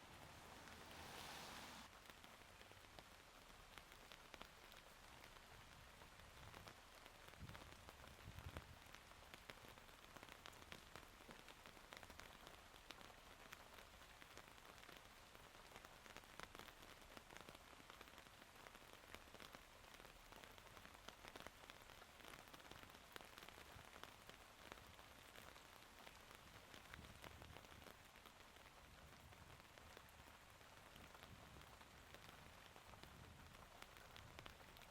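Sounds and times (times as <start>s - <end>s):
rain falling: 0.0s - 34.9s.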